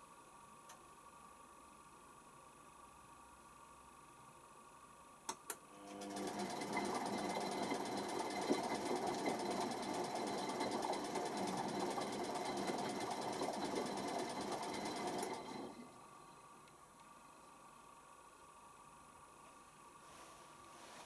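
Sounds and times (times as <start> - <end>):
washing machine motor whirring: 5.7 - 16.2.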